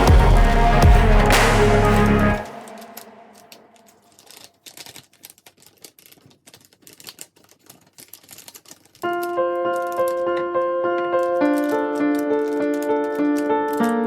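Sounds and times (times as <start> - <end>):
background music: 0.0 - 3.9.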